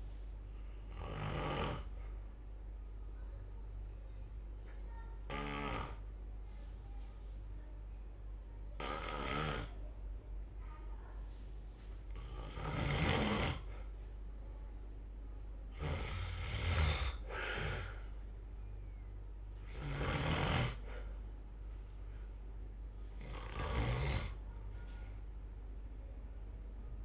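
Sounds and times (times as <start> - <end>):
person snoring: 0.9 - 1.9, 5.3 - 6.0, 8.8 - 9.8, 12.1 - 13.8, 15.8 - 18.1, 19.6 - 21.1, 23.2 - 24.4
quiet breathing: 5.8 - 7.9, 10.6 - 26.9.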